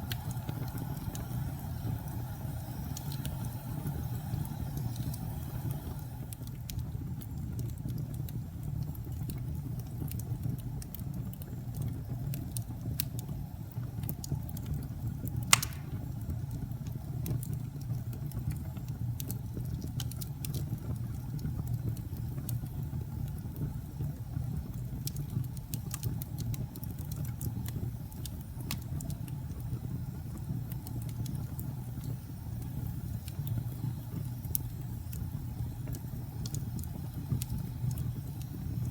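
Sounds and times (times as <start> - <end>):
fire crackles: 0.0 - 38.9
fireplace flames rumbling: 0.0 - 38.9
loud pop of burning log: 15.5 - 16.2.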